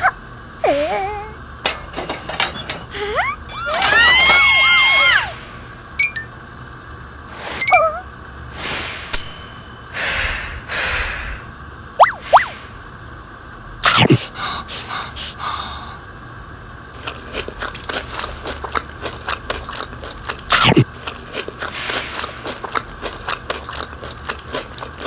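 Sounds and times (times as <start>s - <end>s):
swooping sounds falling in pitch: 12.0s - 12.7s
duck bill crunching pastry: 17.0s - 25.0s.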